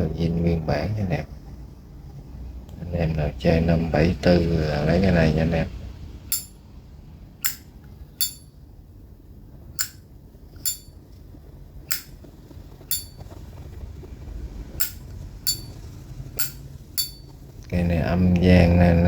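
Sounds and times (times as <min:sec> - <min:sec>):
lighter lid metallic clinks: 0:06.3 - 0:06.6, 0:07.4 - 0:08.4, 0:09.8 - 0:11.0, 0:11.9 - 0:12.2, 0:12.9 - 0:13.2, 0:14.8 - 0:15.8, 0:16.4 - 0:17.3.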